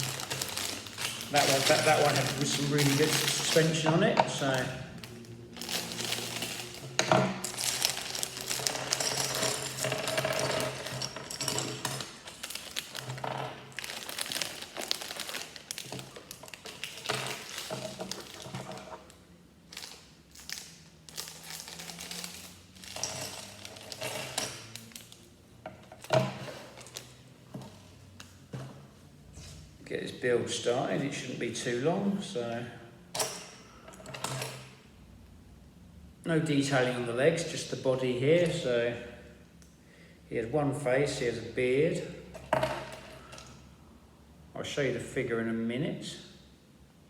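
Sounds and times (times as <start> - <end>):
plastic toy pieces rattling: 0.0 - 3.7, 5.6 - 18.9
plastic crinkling: 0.0 - 25.3.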